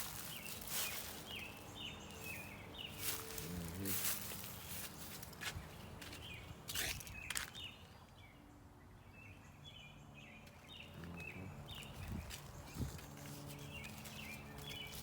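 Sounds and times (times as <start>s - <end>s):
small bird chirping: 9.3s - 15.0s.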